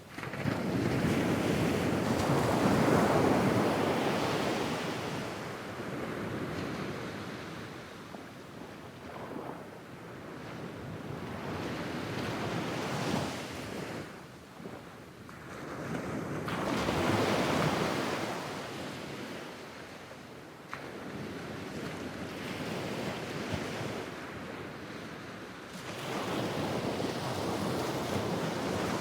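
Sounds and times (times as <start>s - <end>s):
sea waves on a beach: 0.0s - 29.0s.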